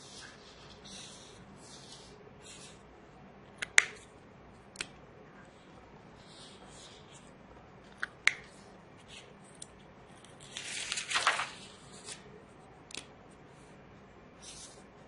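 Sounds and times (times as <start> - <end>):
marker scratching on paper: 0.0 - 2.9, 5.5 - 7.4, 14.4 - 14.9
paper rustling: 10.4 - 12.2.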